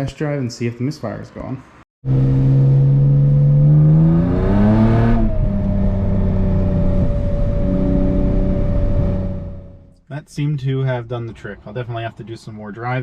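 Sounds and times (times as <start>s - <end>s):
car engine accelerating: 2.0s - 9.9s.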